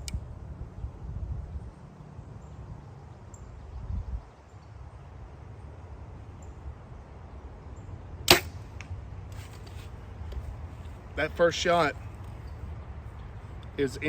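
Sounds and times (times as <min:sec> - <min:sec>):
arrow hitting foam target: 0:08.3 - 0:08.6
bow shot snap: 0:08.3 - 0:09.6.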